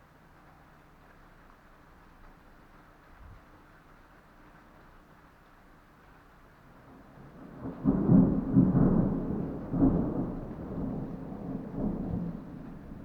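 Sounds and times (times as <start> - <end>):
rolling thunder: 6.8 - 13.0.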